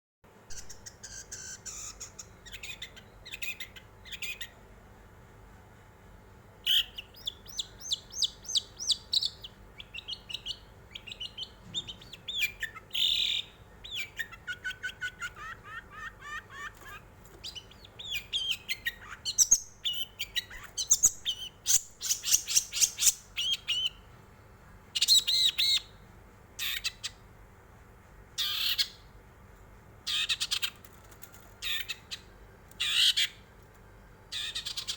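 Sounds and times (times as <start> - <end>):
bird singing scratchy trills: 0.5 - 4.6, 6.6 - 24.1, 28.4 - 29.1, 30.0 - 33.5, 34.3 - 34.9.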